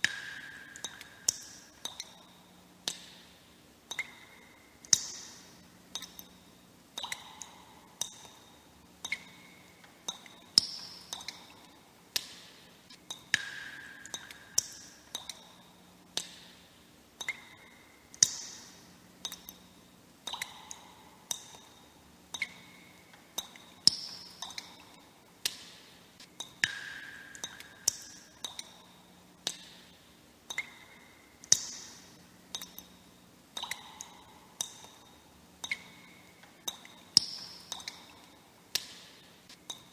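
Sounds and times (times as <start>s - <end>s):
water droplets plinking into water: 0.0s - 3.2s, 3.9s - 5.3s, 7.0s - 8.4s, 9.0s - 12.4s, 13.1s - 15.6s, 17.2s - 19.6s, 20.2s - 22.8s, 23.4s - 25.7s, 26.4s - 28.8s, 30.5s - 31.9s, 32.5s - 32.9s, 33.6s - 39.0s.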